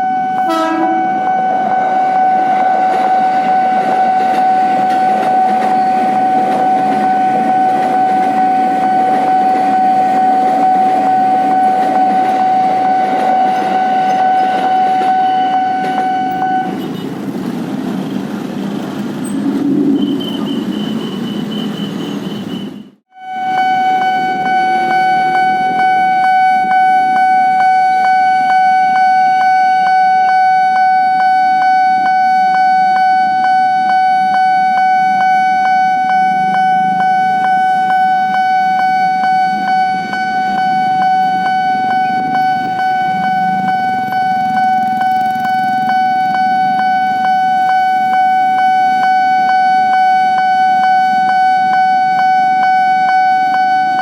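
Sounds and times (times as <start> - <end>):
level-crossing warning bell: 0.0 - 54.0
road vehicle engines running: 2.8 - 23.0, 39.5 - 49.1.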